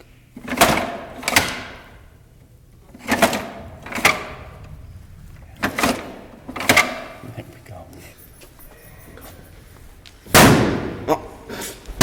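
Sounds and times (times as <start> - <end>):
metal locker door banging: 0.4 - 2.1, 2.9 - 7.3, 10.3 - 11.1.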